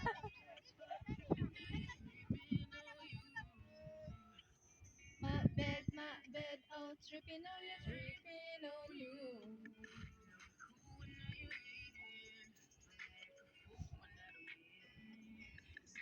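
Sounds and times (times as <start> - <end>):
background music with singing: 0.0 - 16.0.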